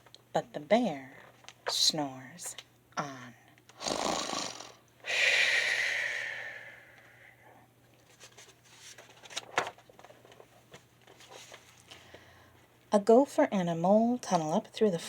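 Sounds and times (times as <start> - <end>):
woman imitating snore: 3.8 - 6.6.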